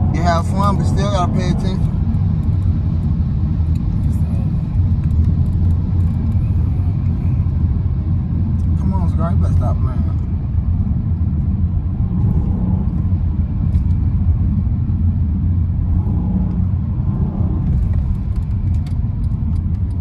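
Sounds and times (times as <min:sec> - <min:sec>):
car engine and road rumble: 0:00.0 - 0:20.0.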